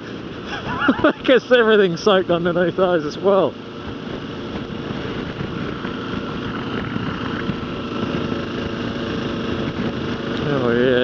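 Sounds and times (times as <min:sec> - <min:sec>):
motorcycle engine cruising: 0:00.0 - 0:11.0
wind noise: 0:03.6 - 0:11.0.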